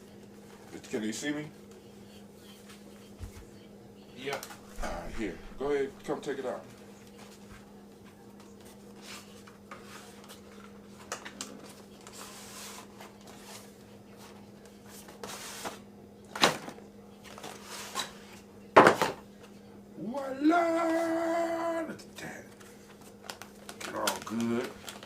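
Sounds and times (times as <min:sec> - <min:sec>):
steady low hum: 0:00.0 - 0:11.1
cardboard and plastic rustling: 0:22.5 - 0:25.0.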